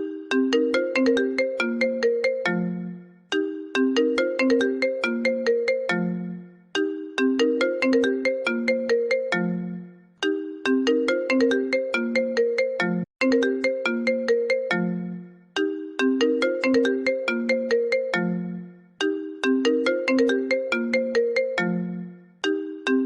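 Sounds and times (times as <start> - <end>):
bell-like phone ringtone: 0.0 - 23.0.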